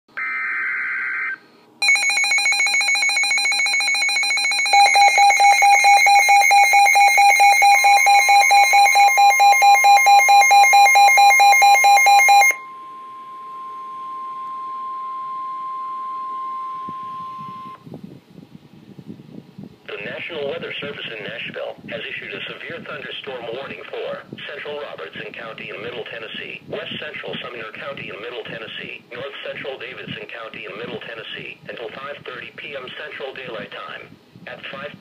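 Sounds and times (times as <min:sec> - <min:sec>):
electronic alarm beeping rapidly: 0:00.2 - 0:17.8
steady warning alarm tone: 0:00.2 - 0:17.8.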